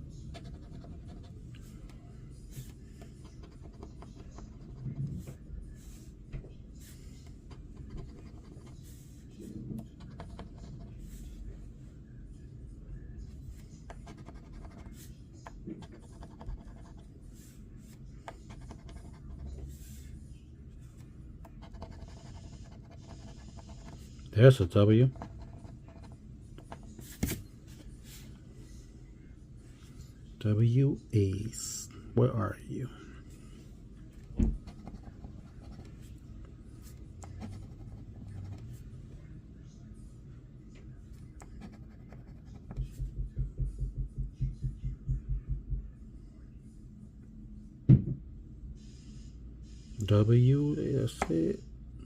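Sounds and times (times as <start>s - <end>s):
scratching lottery ticket: 0.3s - 1.4s, 7.5s - 9.0s, 21.5s - 27.2s, 36.8s - 38.8s, 41.2s - 43.0s
coin scratching a ticket: 21.6s - 24.0s.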